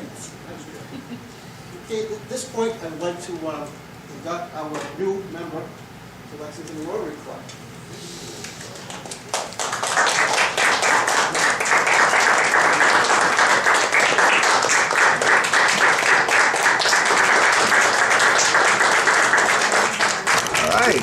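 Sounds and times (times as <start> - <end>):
audience applauding: 8.7 - 21.0.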